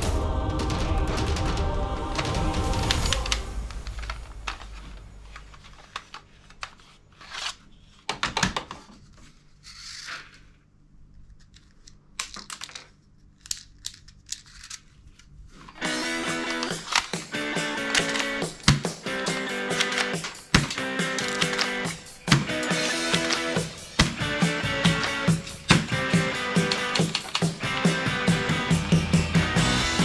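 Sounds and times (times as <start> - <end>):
background music: 0.0 - 5.2, 15.8 - 30.0
toy guns clicking and rattling: 2.2 - 4.7, 11.5 - 15.0, 15.8 - 28.5.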